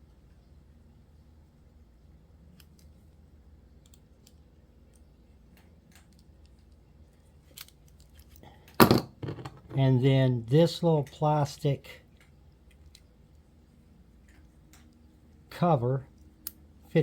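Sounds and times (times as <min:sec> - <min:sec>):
light clicks of small parts handled: 0:02.4 - 0:08.8, 0:12.0 - 0:13.5, 0:14.1 - 0:15.5.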